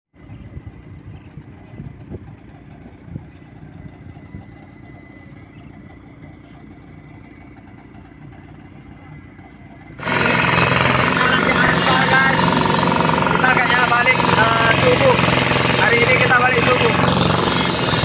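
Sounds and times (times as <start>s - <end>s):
heavy machinery engine idling: 0.2s - 18.0s.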